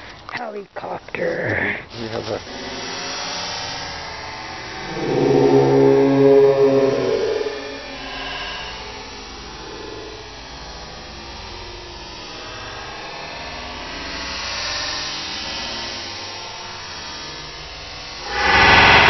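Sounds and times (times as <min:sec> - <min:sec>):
steady droning hum with hiss: 0:00.0 - 0:13.0.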